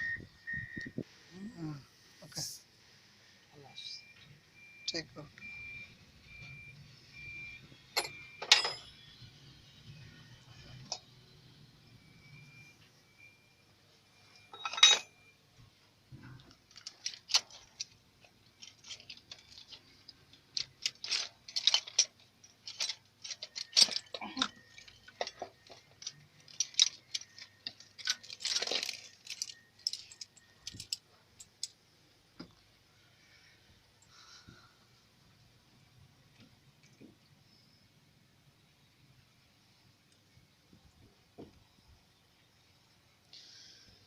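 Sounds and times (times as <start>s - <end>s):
metal tools clinking: 7.9s - 9.0s, 14.4s - 15.3s, 16.7s - 18.0s, 18.6s - 31.8s.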